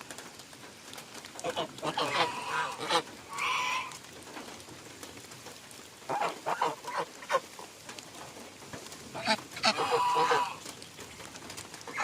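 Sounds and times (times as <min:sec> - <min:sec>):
geese honking: 0:01.4 - 0:04.0, 0:06.1 - 0:07.4, 0:09.2 - 0:10.6.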